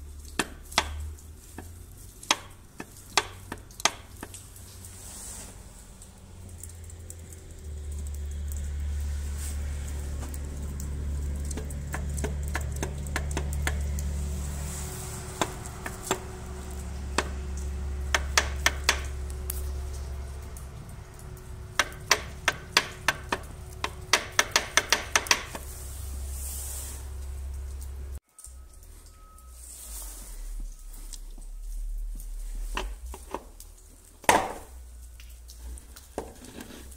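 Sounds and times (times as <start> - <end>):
diesel engine humming: 0.0 - 36.1
sharp uneven engine knocks: 10.1 - 14.2, 15.2 - 25.7.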